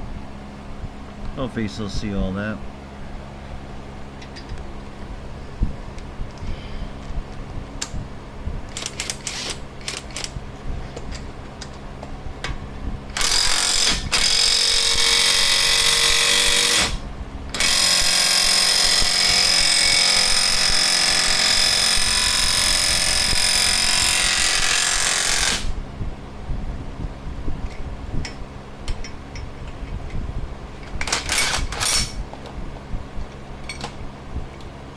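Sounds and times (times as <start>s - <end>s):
impact wrench running: 8.7s - 10.4s, 13.1s - 25.8s, 30.9s - 32.2s.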